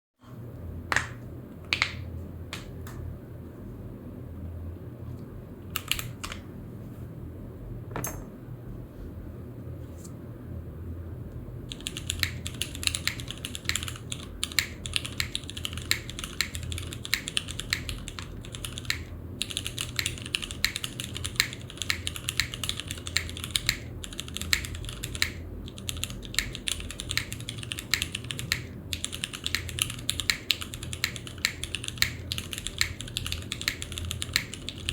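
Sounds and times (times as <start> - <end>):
low steady hum: 0.2 - 34.9
mechanical keyboard typing: 5.8 - 6.4, 11.7 - 34.9.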